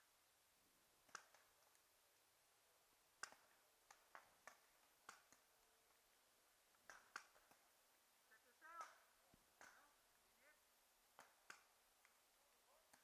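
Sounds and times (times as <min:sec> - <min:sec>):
paintball markers popping: 0:06.8 - 0:07.7.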